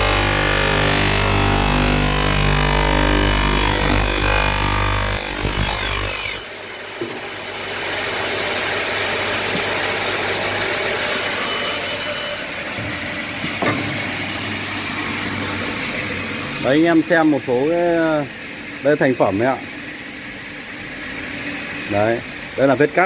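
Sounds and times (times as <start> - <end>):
cutting saw blades cutting aluminium: 0.0 - 17.0.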